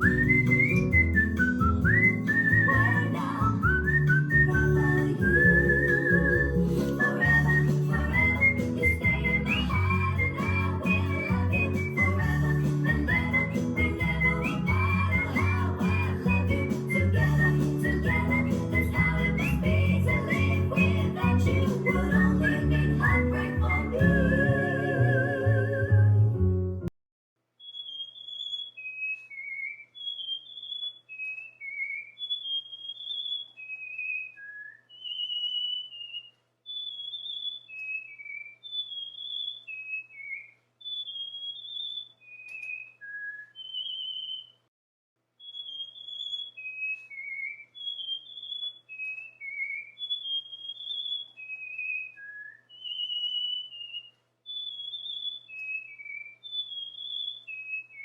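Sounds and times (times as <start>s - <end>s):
cockatiel whistling: 0.0s - 26.0s, 27.6s - 44.6s, 45.4s - 58.0s.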